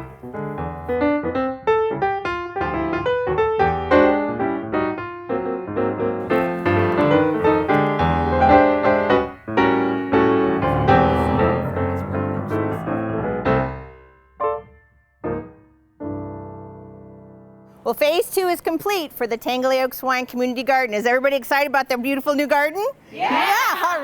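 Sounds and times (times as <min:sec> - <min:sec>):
piano music: 0:00.0 - 0:17.8.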